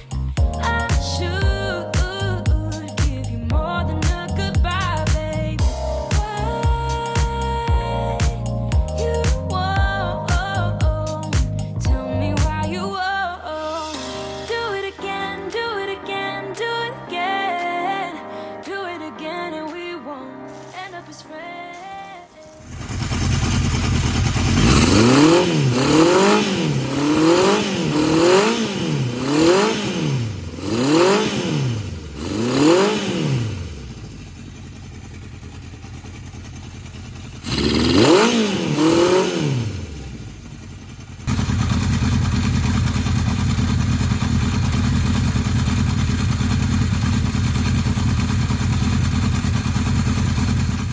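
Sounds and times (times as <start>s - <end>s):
motorcycle engine revving: 22.6s - 50.9s.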